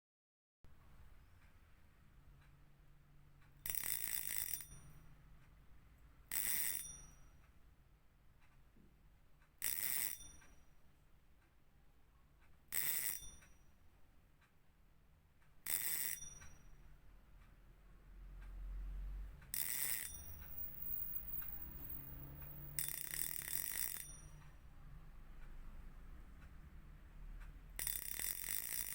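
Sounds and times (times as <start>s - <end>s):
fishing reel drag buzzing: 3.7s - 4.7s, 6.3s - 6.8s, 9.6s - 10.2s, 12.7s - 13.2s, 15.7s - 16.3s, 19.6s - 24.3s, 27.8s - 28.9s.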